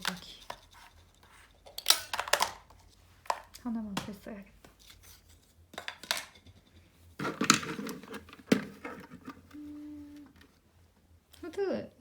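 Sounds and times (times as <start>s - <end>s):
plastic parts clicking and rustling: 0.0s - 0.8s, 1.6s - 4.1s, 4.8s - 9.6s.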